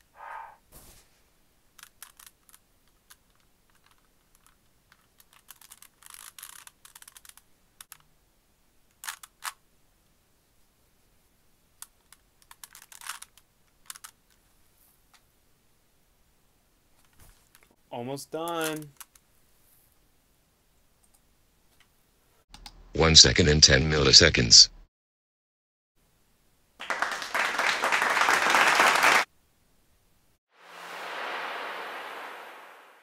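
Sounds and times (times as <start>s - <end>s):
puzzle cube clicking and rasping: 1.7s - 8.1s, 8.9s - 9.6s, 11.8s - 14.4s, 18.5s - 19.3s.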